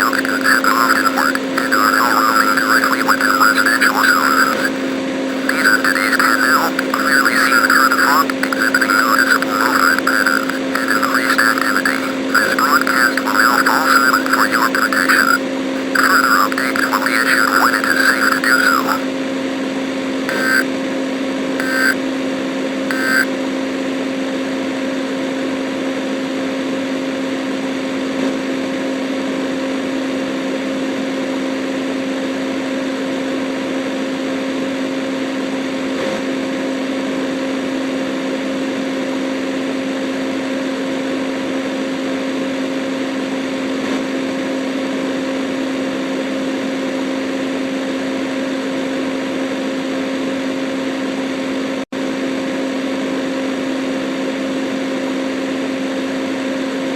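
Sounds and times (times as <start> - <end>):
digital data tones: 0.0 - 19.0, 20.3 - 20.6, 21.6 - 22.0, 22.9 - 23.3
low electronic hum: 0.0 - 19.0, 20.3 - 20.6, 21.6 - 22.0, 22.9 - 23.3
static hiss: 0.0 - 19.0, 20.3 - 20.6, 21.6 - 22.0, 22.9 - 23.2.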